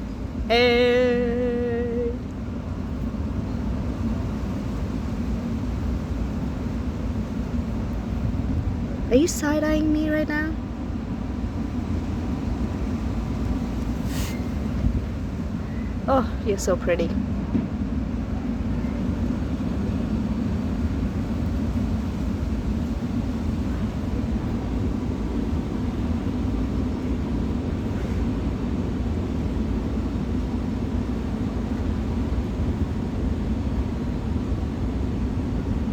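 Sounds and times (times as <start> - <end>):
hum: 0.0 - 4.6.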